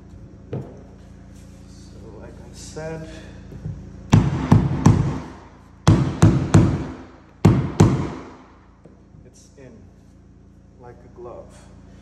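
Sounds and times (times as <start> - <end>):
sharp blows knocking wooden board: 4.1 - 8.6.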